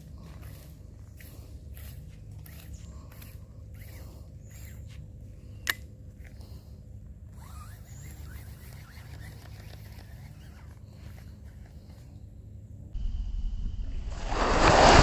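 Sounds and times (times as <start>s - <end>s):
steady low rumble: 12.8s - 15.0s.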